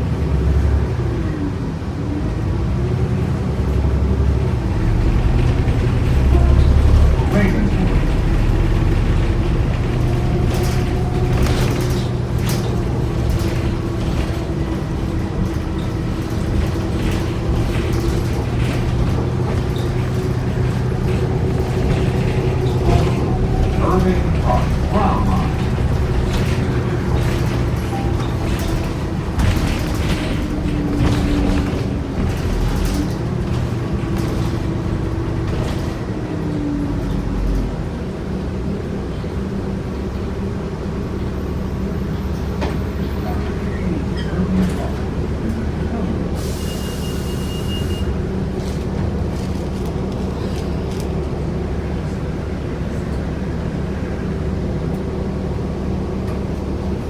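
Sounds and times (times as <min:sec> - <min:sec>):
bus body rattles and creaks: 0:00.0 - 0:57.0
bus drivetrain drone: 0:00.0 - 0:57.0.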